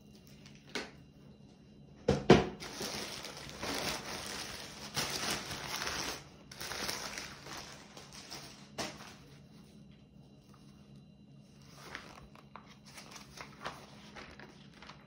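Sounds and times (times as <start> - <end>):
packaging rustling: 2.6 - 9.3, 11.7 - 15.0.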